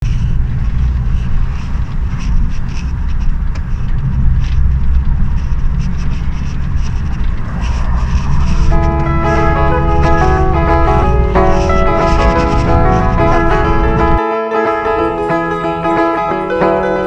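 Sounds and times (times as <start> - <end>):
light rattles: 0.0 - 14.2
vehicle rumble: 0.0 - 14.2, 14.8 - 17.0
music: 8.6 - 17.0.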